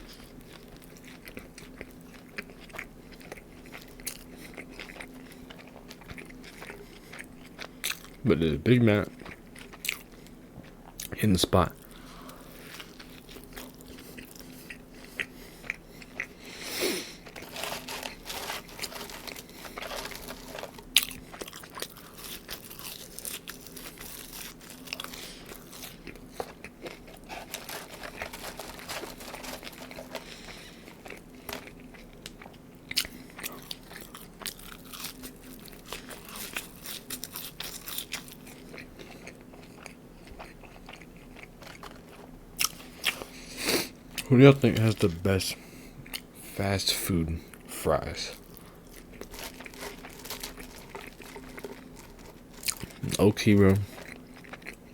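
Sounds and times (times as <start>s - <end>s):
person chewing food: 0.0s - 8.2s, 9.0s - 11.1s, 11.7s - 46.5s, 47.5s - 54.9s
sharp food crunches: 15.2s - 43.3s, 48.4s - 54.8s.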